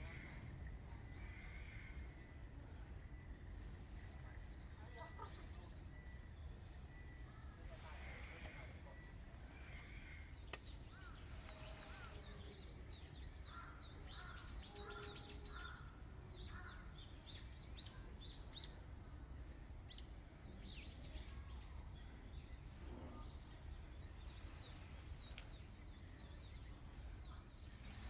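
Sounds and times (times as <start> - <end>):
birds chirping: 0.0 - 28.0.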